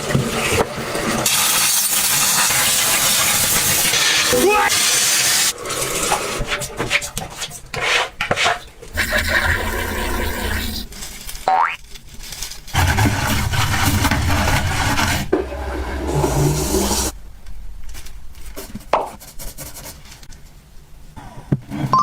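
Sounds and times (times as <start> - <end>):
rough rubbing and scraping: 12.2 - 17.2.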